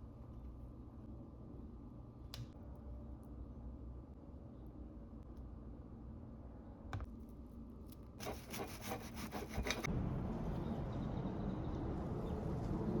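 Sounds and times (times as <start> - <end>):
quick rasping scraping strokes: 8.2 - 9.9.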